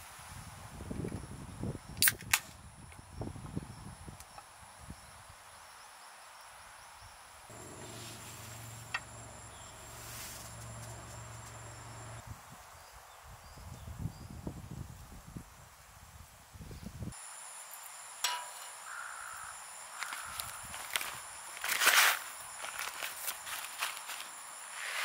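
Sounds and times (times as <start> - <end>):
steady low hum: 7.5 - 12.2.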